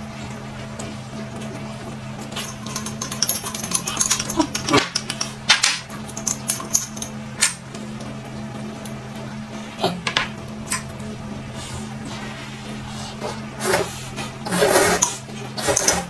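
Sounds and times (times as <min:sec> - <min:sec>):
utensils clinking on plates: 0:02.4 - 0:07.6, 0:14.8 - 0:16.0.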